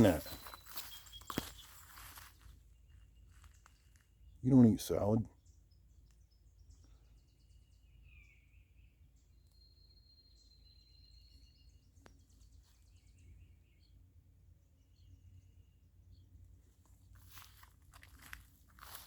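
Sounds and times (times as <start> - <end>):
high thin bird whistle: 0.0 - 1.8
distant bird chirps: 0.0 - 19.0.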